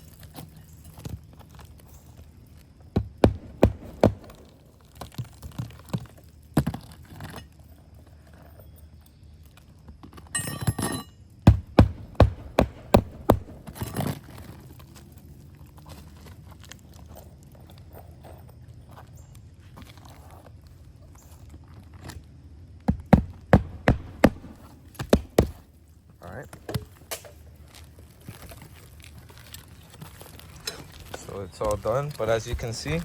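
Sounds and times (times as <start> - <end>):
hammer striking nails: 3.1 - 4.6, 11.5 - 14.0, 22.9 - 25.6.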